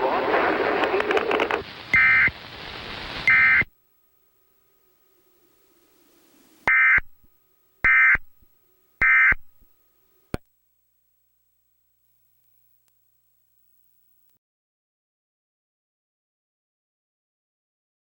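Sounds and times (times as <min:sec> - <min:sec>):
buzzy digital data tones: 0:01.4 - 0:10.4.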